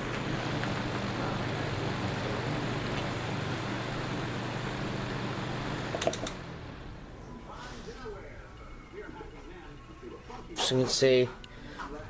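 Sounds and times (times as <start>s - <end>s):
box fan motor hum: 0.0s - 12.0s.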